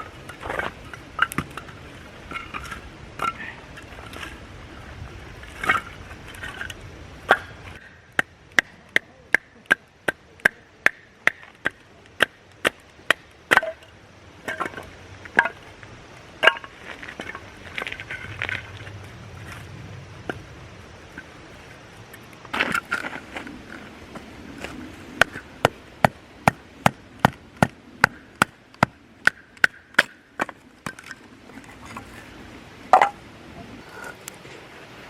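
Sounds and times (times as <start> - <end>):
axe chopping firewood: 7.3 - 13.8, 25.2 - 31.2.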